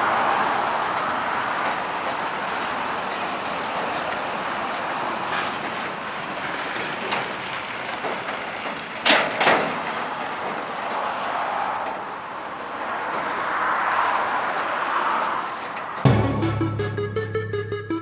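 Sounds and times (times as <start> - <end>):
vehicle road noise: 10.7 - 16.2.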